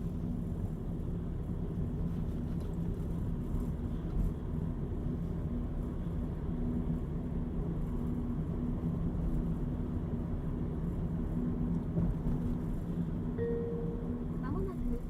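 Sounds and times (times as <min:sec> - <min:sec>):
vehicle engine rumble: 0:00.0 - 0:15.0
faint hum: 0:13.4 - 0:15.0.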